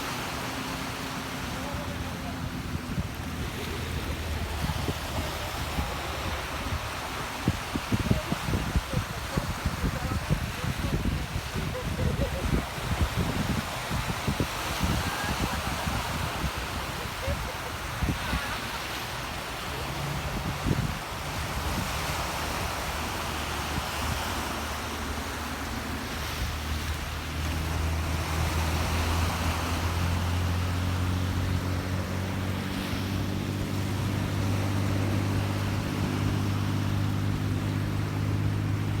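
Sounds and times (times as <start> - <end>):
jet ski engine running: 0.0 - 39.0
rushing water: 0.0 - 39.0
wind buffeting microphone: 0.0 - 39.0.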